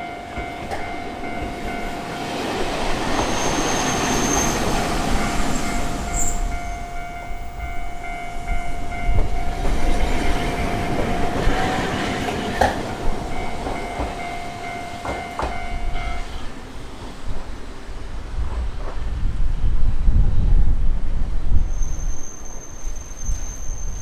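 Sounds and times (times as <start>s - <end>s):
wheels clacking over rail joints: 0.0s - 17.5s
tram passing: 0.0s - 24.0s.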